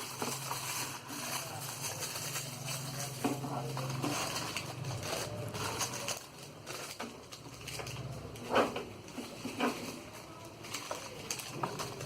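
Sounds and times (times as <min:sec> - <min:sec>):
plastic parts clicking and rustling: 0:00.0 - 0:12.0.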